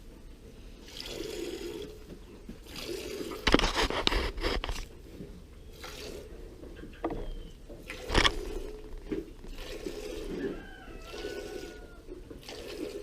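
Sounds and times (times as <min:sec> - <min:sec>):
milk squirting into a pail: 0:07.8 - 0:13.0.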